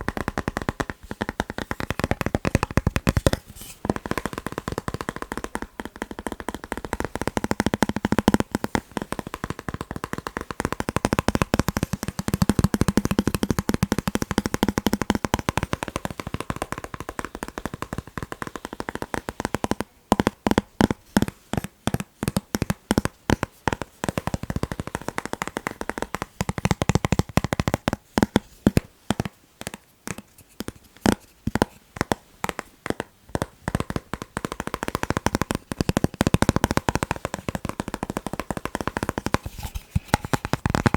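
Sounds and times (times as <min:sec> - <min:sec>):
fast tapping on chocolate: 0:00.0 - 0:40.9.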